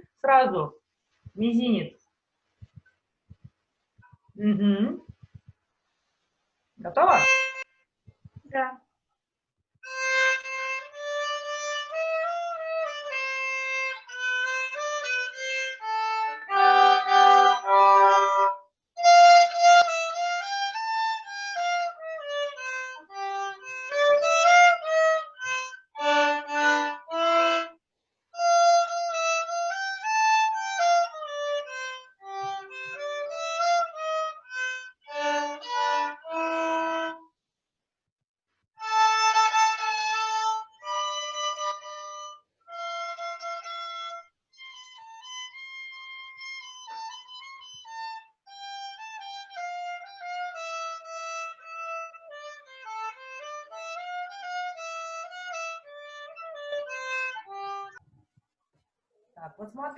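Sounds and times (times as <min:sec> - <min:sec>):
accordion melody: 0:06.9 - 0:07.7, 0:09.8 - 0:27.8, 0:28.4 - 0:37.2, 0:38.8 - 0:58.0.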